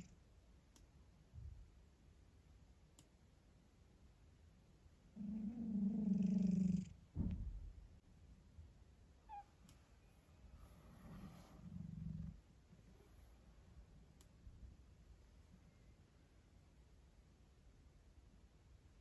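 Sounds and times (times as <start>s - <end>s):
cat snoring: 5.2s - 7.0s, 11.0s - 12.4s.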